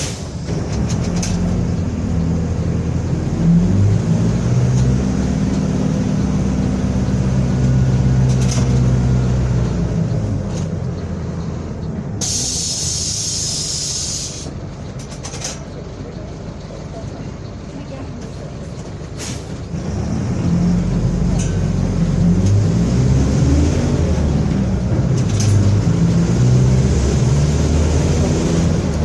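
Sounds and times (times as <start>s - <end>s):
bus diesel engine drone: 0.0s - 29.0s
compressed air hiss: 12.2s - 14.5s.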